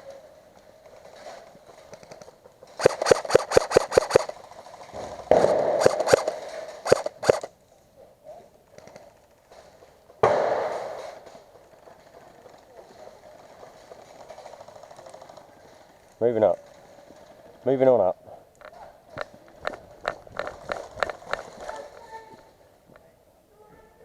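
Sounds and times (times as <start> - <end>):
airsoft gun shots: 2.8 - 4.4, 5.3 - 7.5, 10.2 - 11.2.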